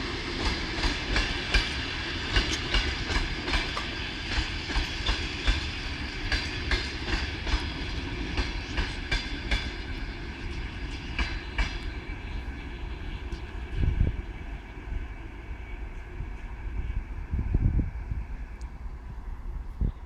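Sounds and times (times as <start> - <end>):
train wheels clicking over rail joints: 0.0 - 13.8
train rumble: 0.0 - 20.0
wind on microphone: 10.6 - 20.0.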